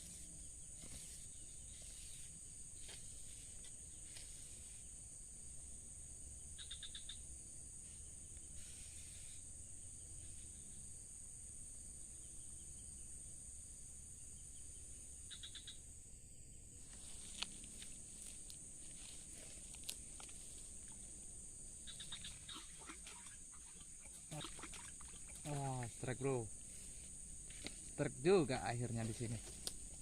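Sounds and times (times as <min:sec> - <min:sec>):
high-pitched insect chorus: 0:00.0 - 0:30.0
rapid pulsed chirping call: 0:06.6 - 0:07.2, 0:15.3 - 0:15.8, 0:21.8 - 0:26.5.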